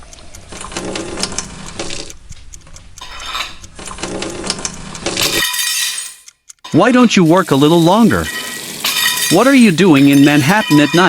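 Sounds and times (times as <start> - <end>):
dishes and cutlery clattering: 3.0 - 3.6, 5.2 - 6.8, 8.2 - 11.0.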